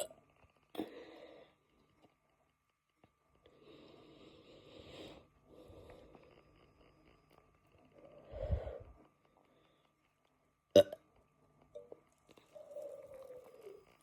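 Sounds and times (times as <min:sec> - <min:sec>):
person breathing softly: 0:03.4 - 0:06.5, 0:07.9 - 0:10.0.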